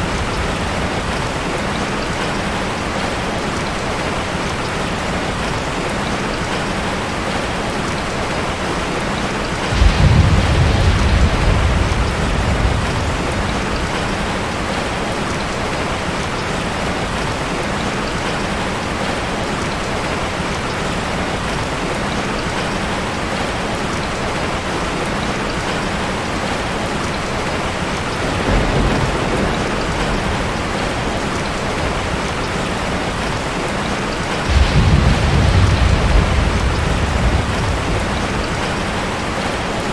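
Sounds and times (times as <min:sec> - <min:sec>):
thunder rumbling: 0:00.0 - 0:03.0, 0:09.6 - 0:15.9, 0:28.0 - 0:39.9
heavy rain pouring: 0:00.0 - 0:39.9.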